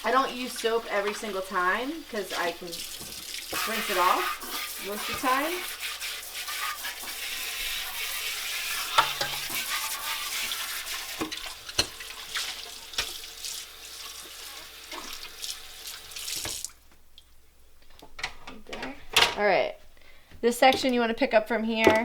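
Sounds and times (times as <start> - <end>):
tap water running and splashing: 0.0 - 17.3
plastic parts knocking on sink: 21.7 - 22.0.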